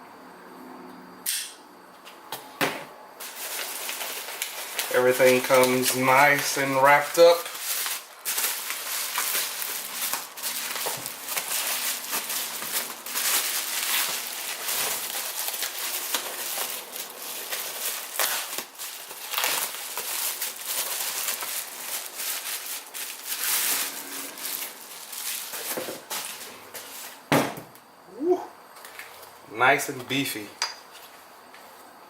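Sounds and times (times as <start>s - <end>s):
packing wrap crinkling: 3.2s - 27.2s.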